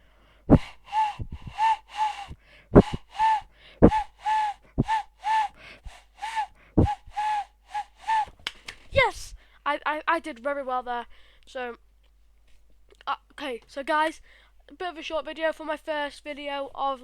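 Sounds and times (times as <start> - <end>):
cupped-hand whistle hooting: 0.5 - 8.4
breathy gusts into hands: 0.5 - 9.1.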